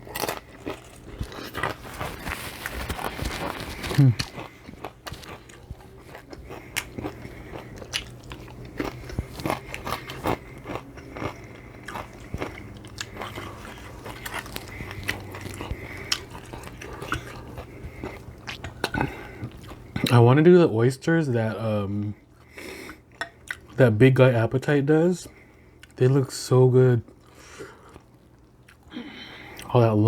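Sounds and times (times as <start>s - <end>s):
crunchy wet chewing: 0.0s - 20.2s, 22.2s - 23.8s, 27.0s - 29.8s.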